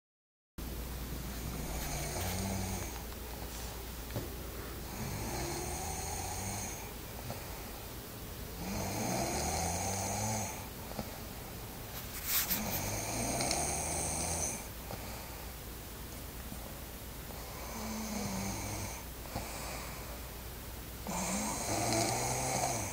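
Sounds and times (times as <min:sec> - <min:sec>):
woman snoring: 0:01.5 - 0:03.0, 0:04.8 - 0:06.9, 0:08.6 - 0:10.7, 0:12.8 - 0:14.7, 0:17.4 - 0:19.9, 0:21.0 - 0:22.9.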